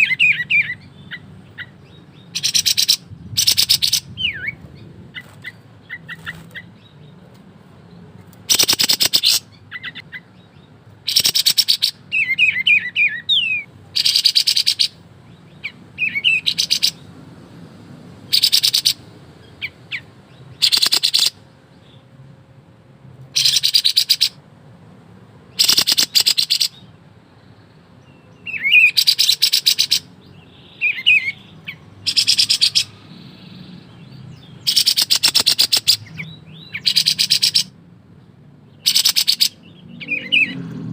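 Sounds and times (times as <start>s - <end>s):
songbird rattling trill: 0.0s - 7.0s, 8.4s - 10.0s, 11.0s - 15.0s, 15.6s - 17.1s, 18.3s - 19.0s, 19.6s - 21.4s, 23.3s - 24.4s, 25.5s - 26.9s, 28.5s - 37.7s, 38.8s - 40.5s.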